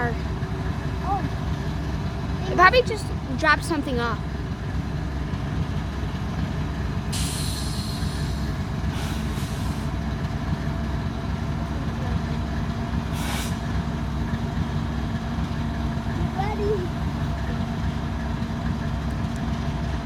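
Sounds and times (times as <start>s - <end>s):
diesel locomotive rumbling: 0.0s - 20.0s
air release hisses: 7.1s - 10.0s, 13.1s - 13.7s.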